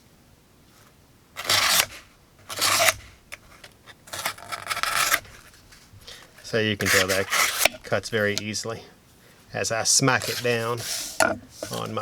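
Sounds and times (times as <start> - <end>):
knife cutting cardboard: 1.4 - 8.4, 10.0 - 12.0.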